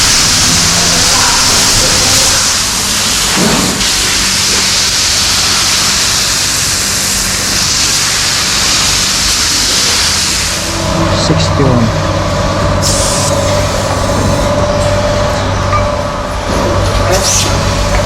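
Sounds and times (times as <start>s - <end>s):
milking machinery hiss: 0.0s - 10.8s.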